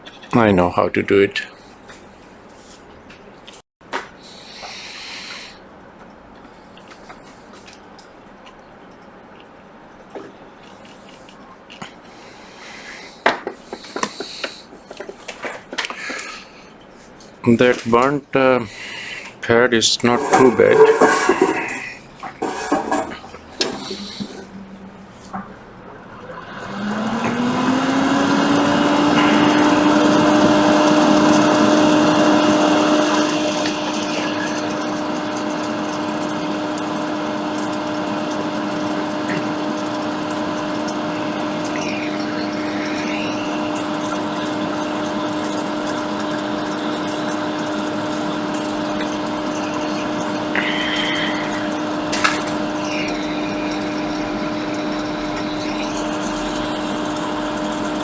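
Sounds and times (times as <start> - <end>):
electric fan motor hum: 19.3 - 58.0.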